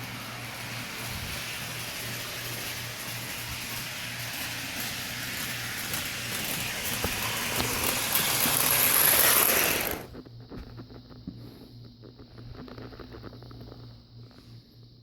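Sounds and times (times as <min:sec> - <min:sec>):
model train running on track: 0:00.0 - 0:10.1.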